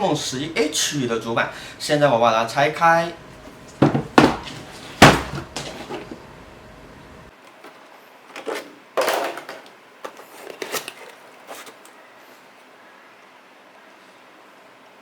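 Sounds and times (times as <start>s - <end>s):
cardboard box rustling: 8.3s - 11.9s.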